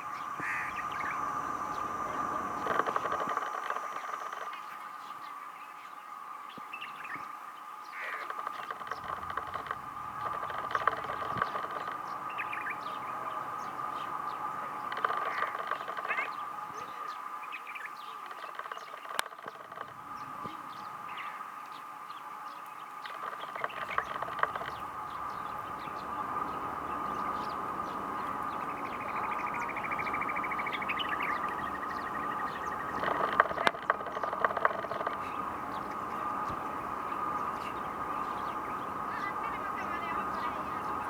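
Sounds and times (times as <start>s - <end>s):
steady high drone: 0.0s - 4.5s, 33.9s - 41.0s
rapid bird trill: 0.0s - 4.8s, 8.0s - 21.4s, 23.0s - 41.0s
birds chirping and calling: 0.0s - 5.2s, 8.0s - 21.4s, 23.0s - 41.0s.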